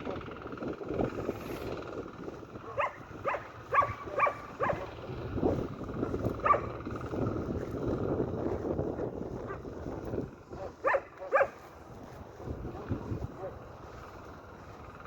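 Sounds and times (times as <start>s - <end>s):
low rumble: 0.0s - 15.0s
dog barking: 2.6s - 5.0s, 6.4s - 6.8s, 9.5s - 9.7s, 10.5s - 11.7s, 12.7s - 13.7s.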